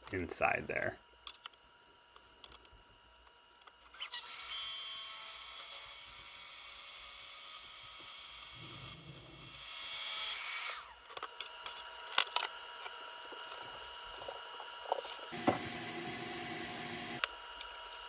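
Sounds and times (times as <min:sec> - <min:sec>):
power tools whining: 0:15.3 - 0:17.2.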